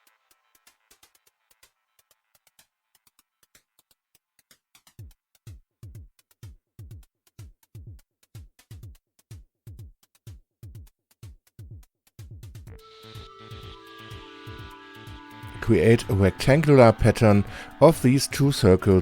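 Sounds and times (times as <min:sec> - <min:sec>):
hi-hat ticks: 0:00.0 - 0:12.8
deep electronic kick drum: 0:05.0 - 0:15.8.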